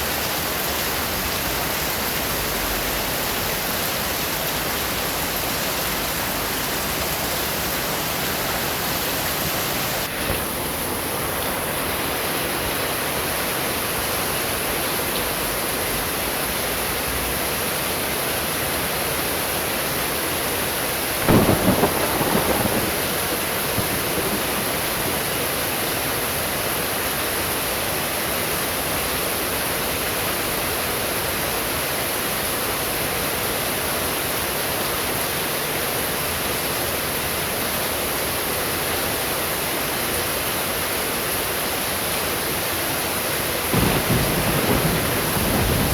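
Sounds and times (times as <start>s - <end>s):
heavy rain hissing: 0.0s - 17.3s, 20.2s - 28.5s, 41.4s - 45.9s
thunder crack and rumble: 21.2s - 26.3s, 43.7s - 45.9s.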